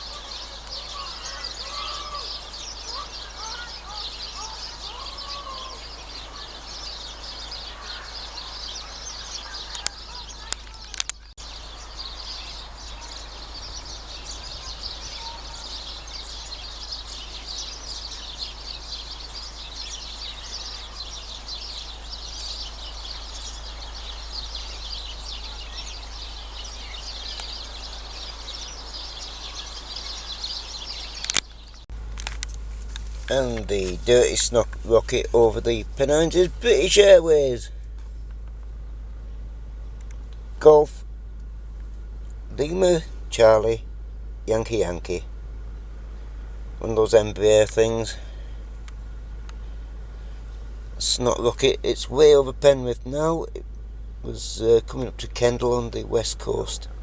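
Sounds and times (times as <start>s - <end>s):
small birds chirping: 0.0s - 57.0s
sharp clicks: 9.7s - 11.4s, 31.2s - 33.7s, 40.0s - 40.4s.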